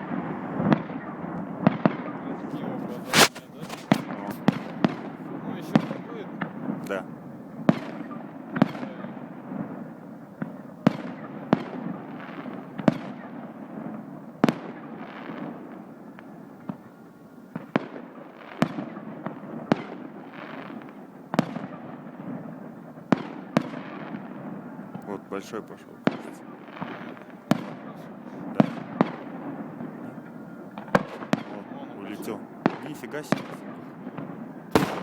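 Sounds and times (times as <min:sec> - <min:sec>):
firework shells bursting: 0:02.5 - 0:07.0, 0:22.7 - 0:35.0.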